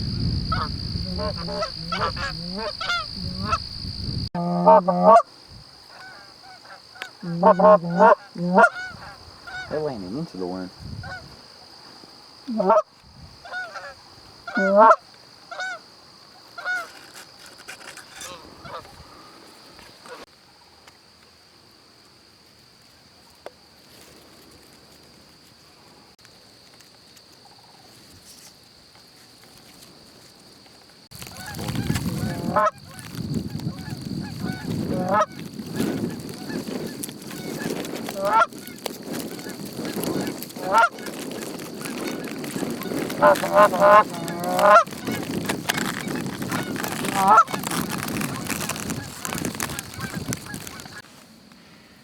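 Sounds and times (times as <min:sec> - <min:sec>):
geese honking: 0:00.5 - 0:03.6, 0:04.4 - 0:05.2, 0:05.9 - 0:11.2, 0:12.5 - 0:12.8, 0:13.5 - 0:15.8, 0:31.2 - 0:35.4, 0:37.3 - 0:41.1, 0:42.0 - 0:51.0.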